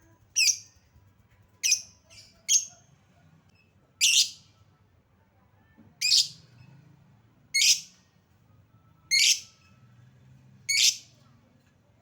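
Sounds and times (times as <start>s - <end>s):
lovebird high-pitched calls: 0.4s - 0.7s, 1.6s - 2.8s, 4.0s - 4.4s, 6.0s - 6.4s, 7.6s - 8.0s, 9.1s - 9.5s, 10.7s - 11.1s.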